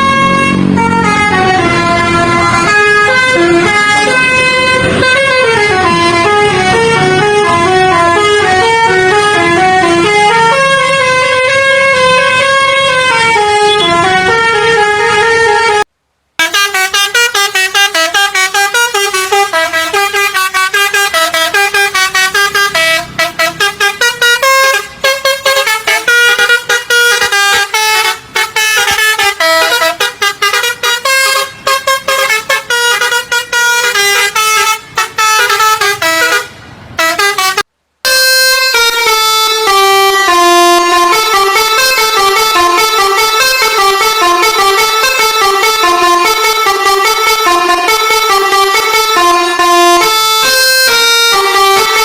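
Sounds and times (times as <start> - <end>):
musical bus air horns playing tune: 0.0 - 52.0.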